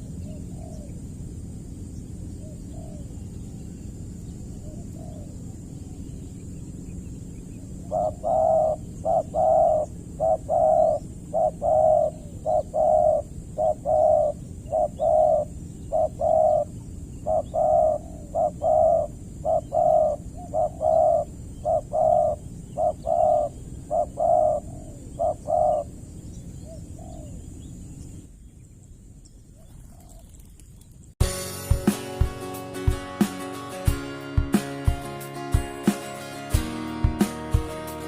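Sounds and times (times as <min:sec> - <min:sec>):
dove cooing: 0:00.0 - 0:01.0, 0:02.4 - 0:03.8, 0:04.5 - 0:06.2, 0:07.5 - 0:27.7.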